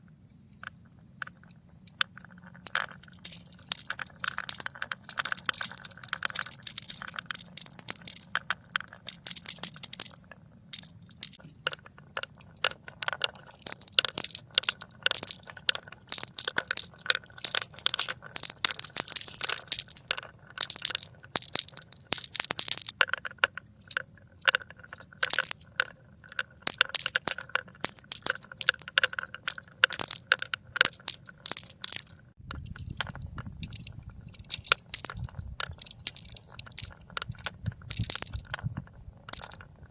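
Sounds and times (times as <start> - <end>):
marbles clattering down track: 1.3 - 39.9.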